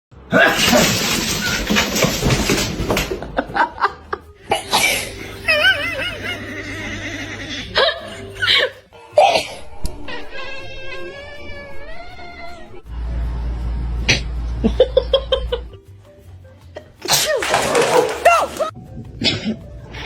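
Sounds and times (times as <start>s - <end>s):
background music: 0.2s - 20.0s
laughter: 3.1s - 9.4s, 14.6s - 15.8s.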